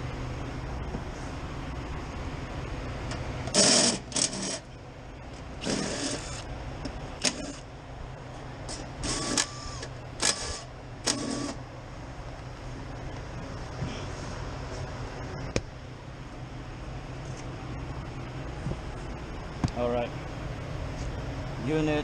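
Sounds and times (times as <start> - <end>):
low machine hum: 0.0 - 22.0.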